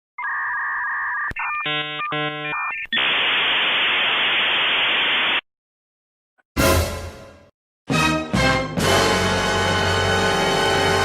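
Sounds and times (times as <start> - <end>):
harsh buzzer: 1.6 - 2.6
loud static hiss: 3.0 - 5.4.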